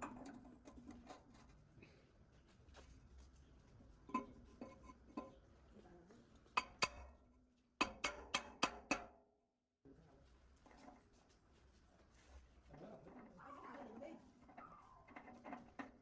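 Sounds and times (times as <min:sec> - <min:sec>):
metallic tool taps on metal: 0:07.8 - 0:09.1.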